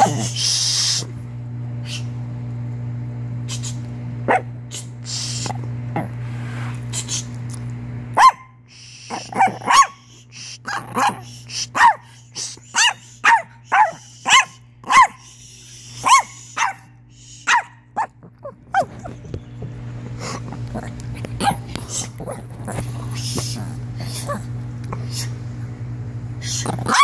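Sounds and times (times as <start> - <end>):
small dog barking: 4.2 - 4.5, 8.1 - 15.3, 16.0 - 18.9, 21.4 - 22.4, 26.8 - 27.0.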